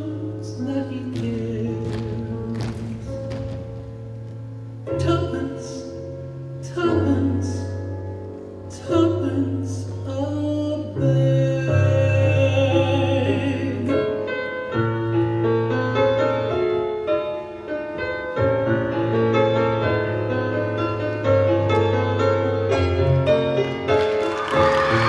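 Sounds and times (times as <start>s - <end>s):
slow lyrical piano: 0.0s - 25.0s
audience whooping and cheering: 24.0s - 25.0s.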